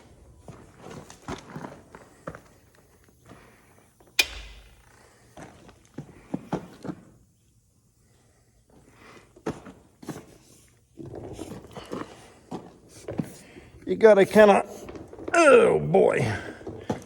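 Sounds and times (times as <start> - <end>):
sharp bang: 4.2 - 5.0.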